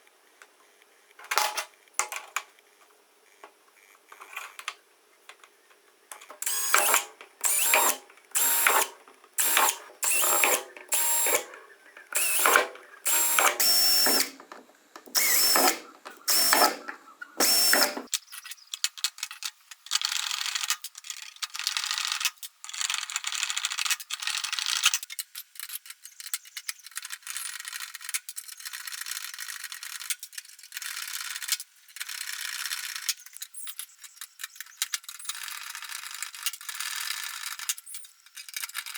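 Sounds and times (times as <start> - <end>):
high mechanical whirring with clicks: 6.1 - 18.2
power tool whining bursts: 6.4 - 14.4, 15.1 - 18.1.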